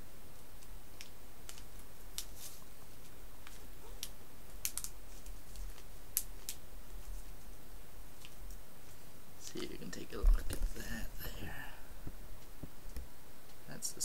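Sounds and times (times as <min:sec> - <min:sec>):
steady low hum: 0:00.0 - 0:14.0
plastic clicks and crinkles: 0:00.6 - 0:06.6.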